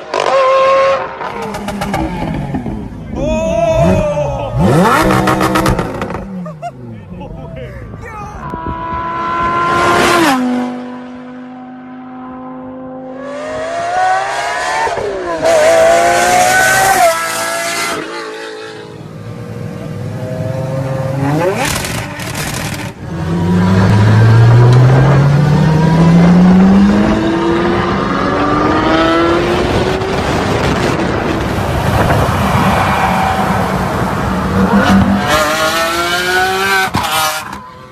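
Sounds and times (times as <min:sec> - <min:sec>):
sports car engine revving: 0:04.6 - 0:06.3.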